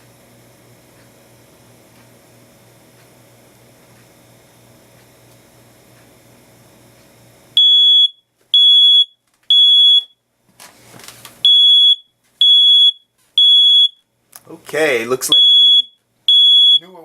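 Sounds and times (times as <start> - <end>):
smoke alarm beeping: 7.6 - 10.2, 11.4 - 14.1, 15.3 - 17.0.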